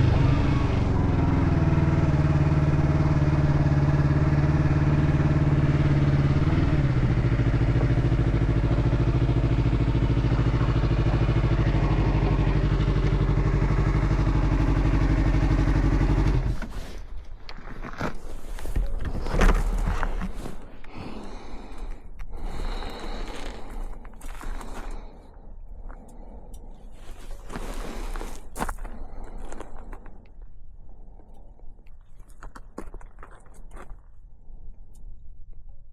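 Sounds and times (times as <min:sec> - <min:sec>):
motorcycle engine idling: 0:00.0 - 0:16.7
scrapes clatters and knocks: 0:16.5 - 0:20.9.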